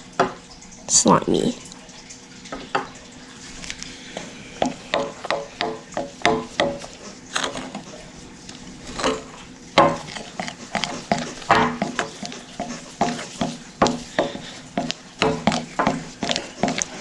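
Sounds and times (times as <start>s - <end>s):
spoon scraping sticky slime in bowl: 4.6s - 7.9s, 9.8s - 17.0s.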